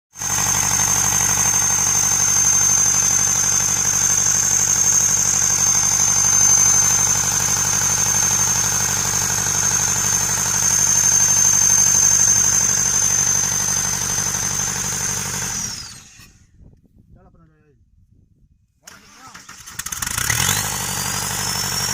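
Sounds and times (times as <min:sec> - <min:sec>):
diesel engine idling: 0:00.2 - 0:16.2
high-pitched whine: 0:00.5 - 0:16.5.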